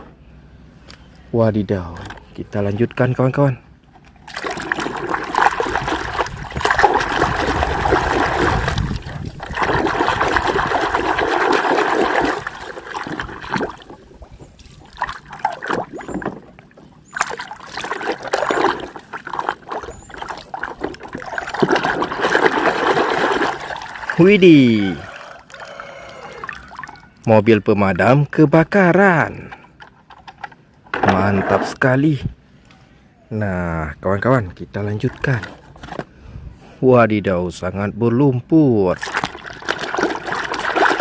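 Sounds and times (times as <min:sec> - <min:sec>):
muddy water sloshing: 0:01.7 - 0:27.4, 0:34.4 - 0:36.0, 0:38.8 - 0:41.0.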